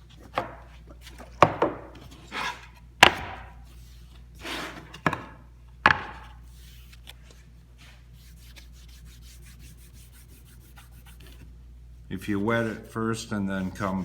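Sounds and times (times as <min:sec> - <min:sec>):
rag rubbing on wood: 0:08.2 - 0:11.4, 0:12.3 - 0:14.0.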